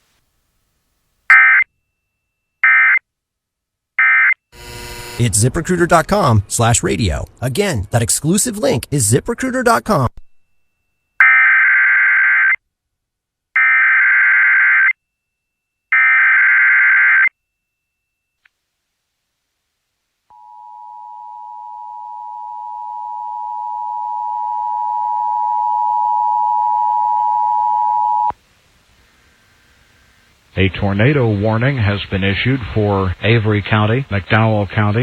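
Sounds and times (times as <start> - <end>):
buzzy data bursts: 4.0 - 6.9.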